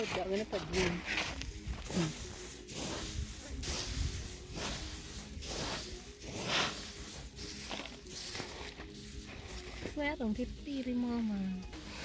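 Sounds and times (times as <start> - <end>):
dry rice stalks rustling: 0.0 - 12.0.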